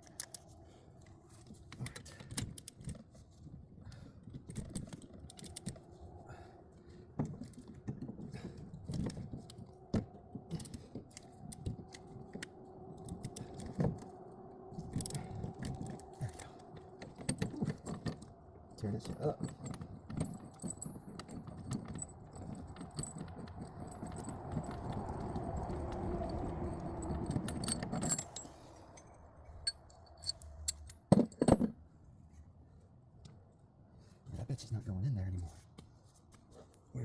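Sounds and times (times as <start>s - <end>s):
metal hand tools clinking: 18.8s - 31.7s.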